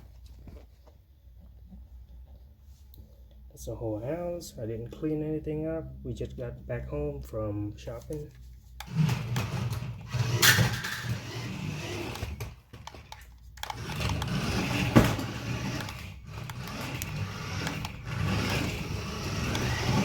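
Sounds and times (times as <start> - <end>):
toy truck electric motor whine: 8.8 - 20.0.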